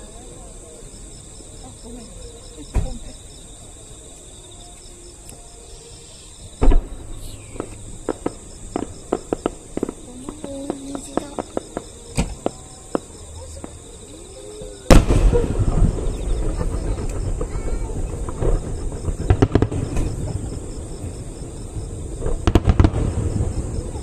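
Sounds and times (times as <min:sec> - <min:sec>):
insects chirring: 0:00.0 - 0:24.0
crackling pops: 0:06.6 - 0:13.8, 0:14.9 - 0:20.6
firework boom: 0:06.6 - 0:13.8, 0:14.9 - 0:24.0.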